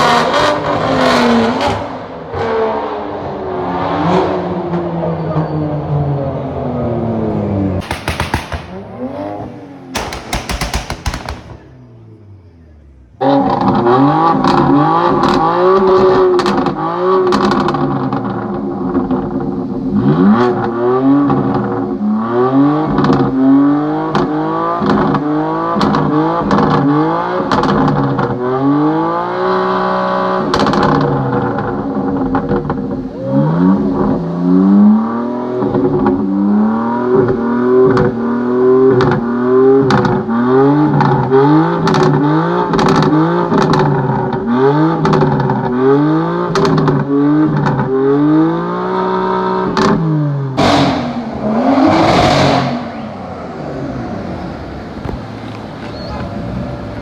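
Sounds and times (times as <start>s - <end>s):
car engine revving: 6.9s - 57.0s.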